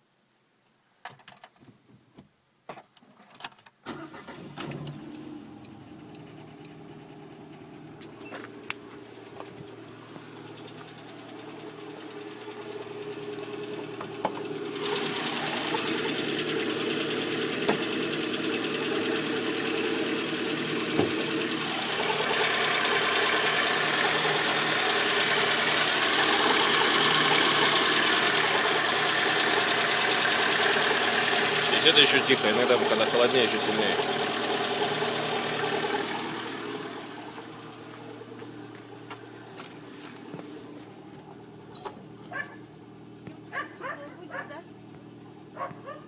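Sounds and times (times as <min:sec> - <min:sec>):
car engine idling with knock: 0:06.8 - 0:43.5.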